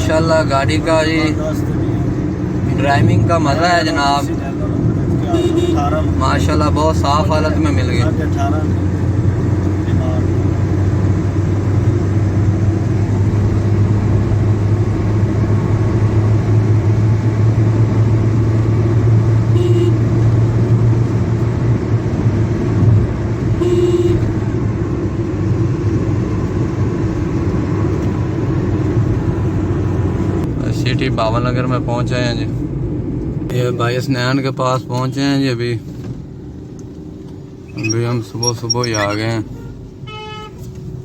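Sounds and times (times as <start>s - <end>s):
car engine and road rumble: 0.0s - 41.0s
brief tones: 37.7s - 40.5s.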